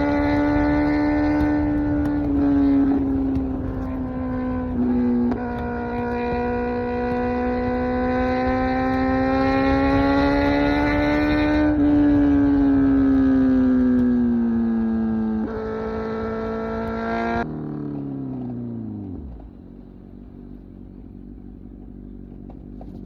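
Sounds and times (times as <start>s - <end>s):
wind rumble: 0.0s - 17.5s
motorcycle engine running: 0.0s - 23.0s.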